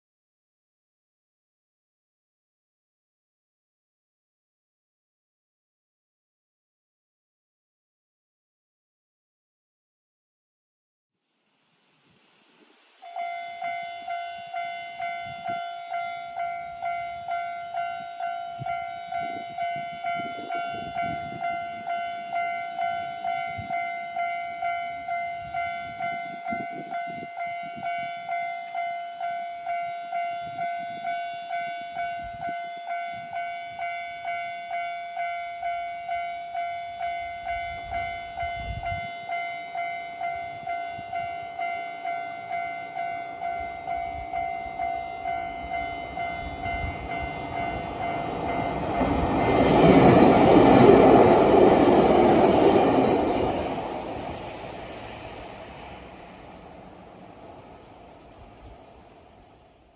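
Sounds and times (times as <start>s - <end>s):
level crossing warning bell: 13.0s - 54.4s.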